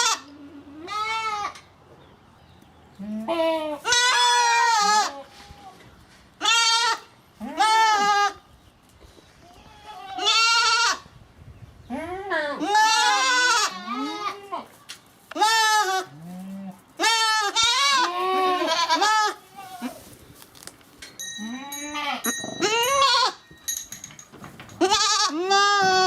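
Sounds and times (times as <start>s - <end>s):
goats bleating: 0.0s - 1.6s, 3.0s - 5.8s, 6.4s - 8.4s, 9.4s - 11.0s, 11.9s - 14.7s, 15.3s - 20.0s, 24.8s - 26.0s.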